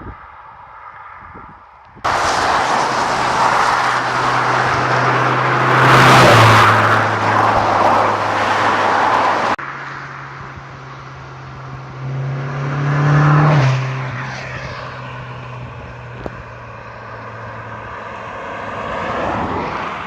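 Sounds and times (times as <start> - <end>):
car engine driving past: 2.1 - 9.6.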